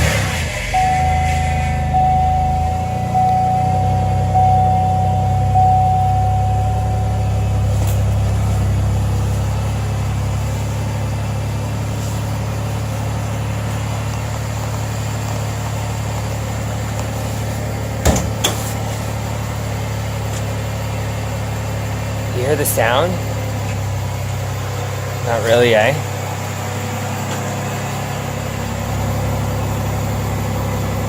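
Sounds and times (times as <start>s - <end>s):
car engine idling: 0.0s - 31.0s
higher steady tone: 0.7s - 13.4s.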